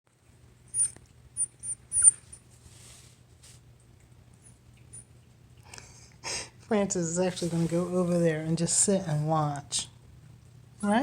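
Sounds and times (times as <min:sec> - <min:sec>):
puppies squeaking: 0:00.7 - 0:02.4.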